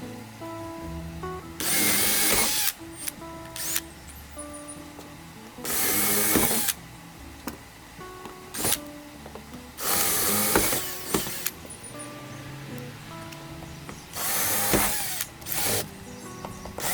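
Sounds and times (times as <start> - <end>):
background music: 0.0 - 16.9
power drill drilling rivets: 1.6 - 6.8, 7.4 - 12.1, 12.8 - 16.9.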